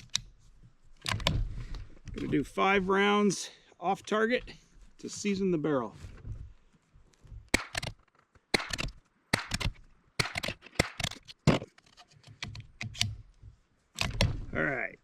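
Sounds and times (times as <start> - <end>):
rifle bolt clicking: 7.6 - 11.2
rifle shots: 8.5 - 11.1.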